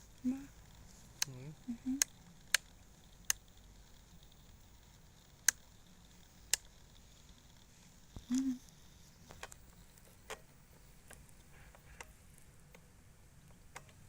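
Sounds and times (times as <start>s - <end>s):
sharp clicks: 0.2s - 4.6s, 5.2s - 14.0s.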